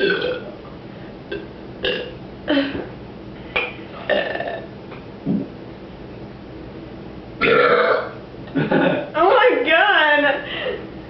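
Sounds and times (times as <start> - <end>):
short burps: 0.0 - 0.4, 1.3 - 2.9, 4.0 - 5.5, 7.4 - 8.2.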